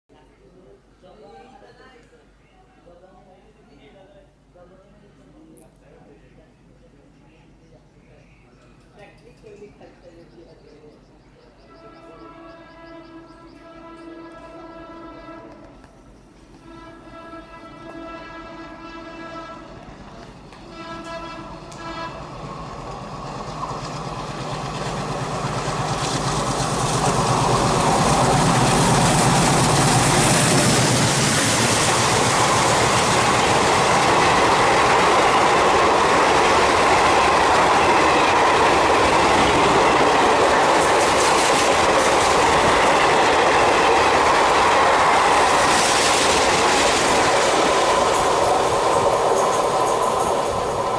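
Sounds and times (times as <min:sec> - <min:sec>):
diesel locomotive engine drone: 0:09.8 - 0:50.9
train wheels clickety-clack on rails: 0:19.7 - 0:50.9.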